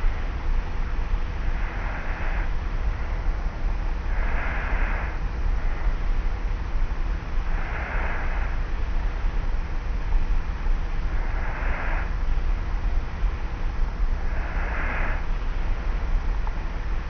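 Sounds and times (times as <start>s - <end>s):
tape recorder hum and hiss: 0.0s - 17.0s
person breathing with slight snoring: 1.2s - 6.5s, 7.3s - 9.3s, 10.9s - 16.4s.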